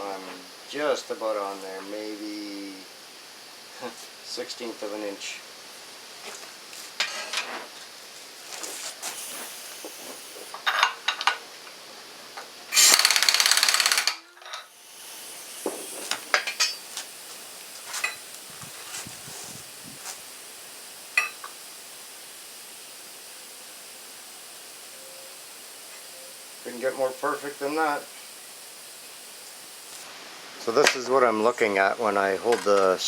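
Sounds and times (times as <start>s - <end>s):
impact wrench hammering: 12.7s - 30.0s.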